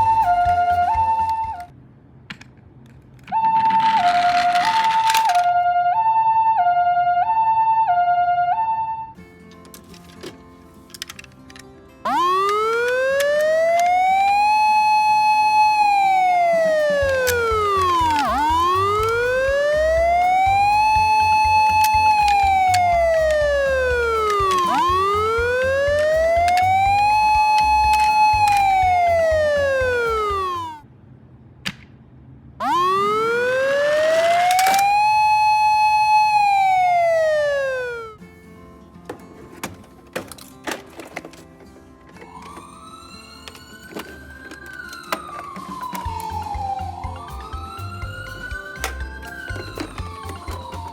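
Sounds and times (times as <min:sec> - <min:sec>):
toy siren wailing: 0:00.0 - 0:01.7, 0:03.3 - 0:09.1, 0:12.1 - 0:30.8, 0:32.6 - 0:38.2, 0:42.2 - 0:50.9.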